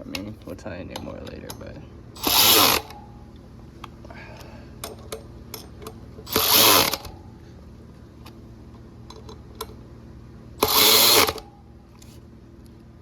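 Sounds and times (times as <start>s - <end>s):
metallic clicks of parts: 0.1s - 3.0s, 4.8s - 7.2s
power tool driving a bolt: 2.2s - 3.0s, 6.3s - 7.2s, 10.6s - 11.5s.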